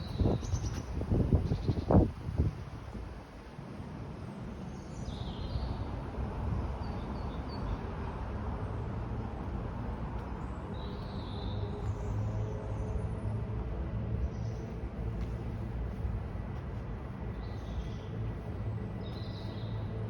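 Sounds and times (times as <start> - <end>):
wind buffeting microphone: 0.0 - 3.4.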